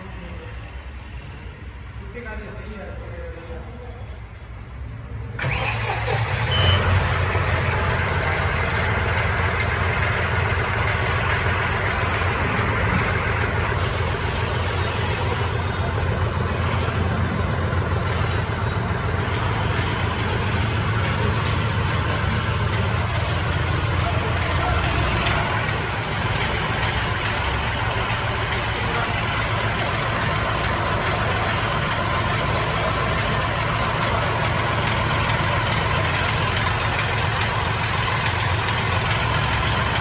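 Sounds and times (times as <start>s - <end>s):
tractor diesel engine starting: 5.4s - 40.0s.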